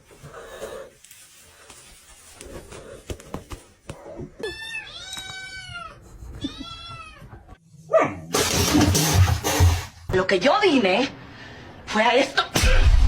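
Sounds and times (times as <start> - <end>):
cat meowing: 4.4 - 7.4.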